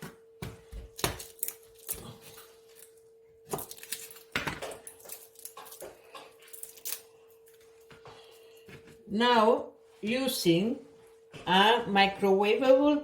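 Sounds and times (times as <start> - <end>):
faint steady hum: 0.0 - 13.0
papery skins crackling: 5.0 - 7.8.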